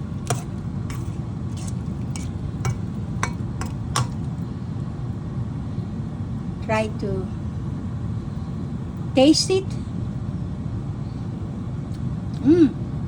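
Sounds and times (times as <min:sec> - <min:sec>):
spoon clinking against pot: 0:00.3 - 0:04.3.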